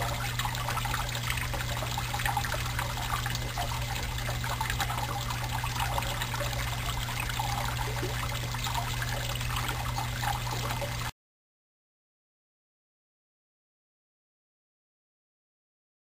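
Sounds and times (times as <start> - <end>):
steady low hum: 0.0 - 11.1
water trickling and splashing: 0.0 - 11.1.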